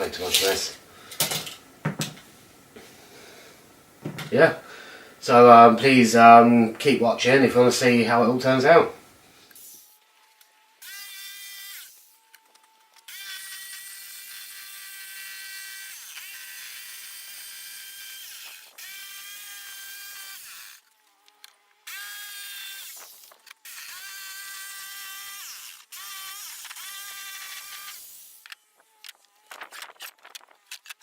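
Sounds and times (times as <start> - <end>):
electric power saw whining: 9.4 - 30.2.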